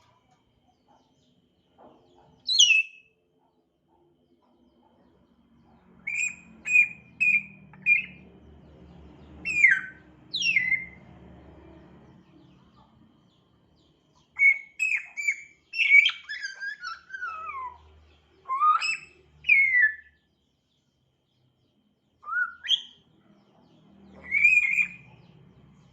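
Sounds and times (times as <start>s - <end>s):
parrot whistling and chirping: 2.4s - 3.1s, 6.0s - 8.2s, 9.4s - 11.0s, 14.4s - 20.2s, 22.2s - 23.0s, 24.1s - 25.1s.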